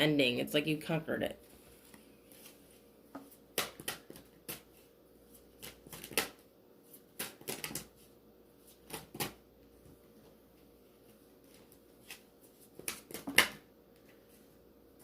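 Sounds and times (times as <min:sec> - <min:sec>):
cards being shuffled: 0:01.5 - 0:09.4, 0:11.1 - 0:14.2.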